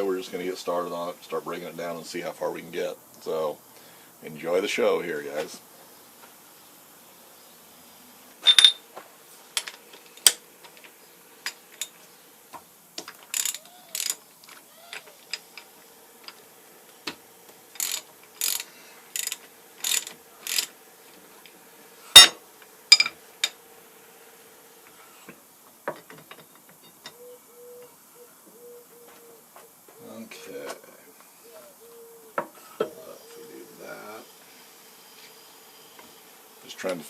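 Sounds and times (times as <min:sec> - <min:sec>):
sharp metal clank: 0:08.4 - 0:08.8, 0:22.2 - 0:23.2.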